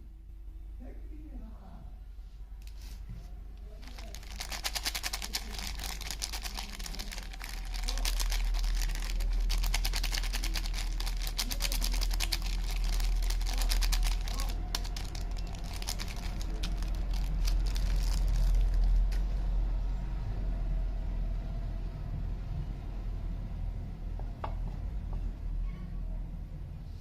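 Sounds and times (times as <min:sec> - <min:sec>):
low steady hum: 0:00.0 - 0:27.0
wrapping crinkling: 0:03.8 - 0:19.2.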